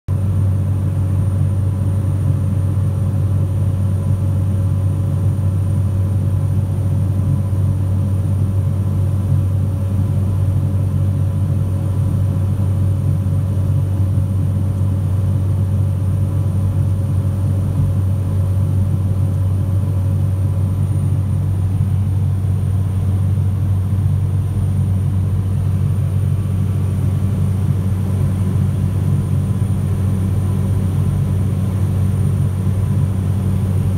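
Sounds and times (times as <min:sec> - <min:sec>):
light aircraft engine drone: 0:00.1 - 0:33.9.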